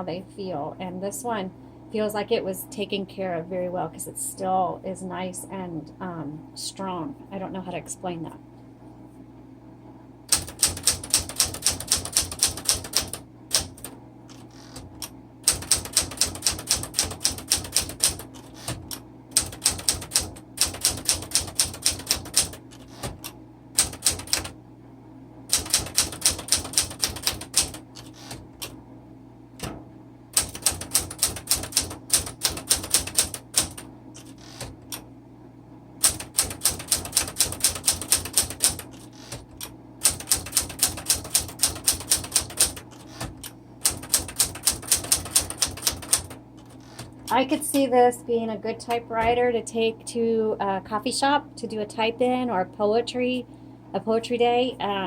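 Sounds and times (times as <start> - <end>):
manual typewriter typing: 10.3 - 24.6, 25.5 - 28.7, 30.4 - 35.0, 36.0 - 47.4.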